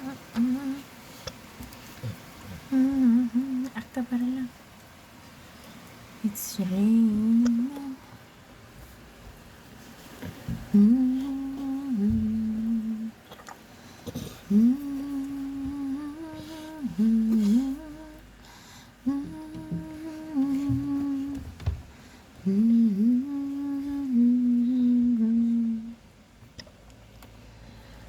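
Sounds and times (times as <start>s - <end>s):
woman humming: 0.0s - 0.9s, 2.0s - 4.5s, 6.5s - 8.0s, 10.7s - 13.2s, 14.2s - 18.4s, 19.0s - 21.7s, 22.4s - 26.0s.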